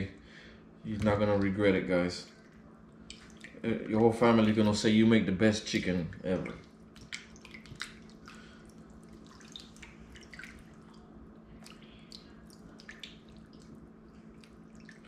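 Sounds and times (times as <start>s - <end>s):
water splashing and dripping: 2.3s - 4.8s, 6.1s - 15.0s.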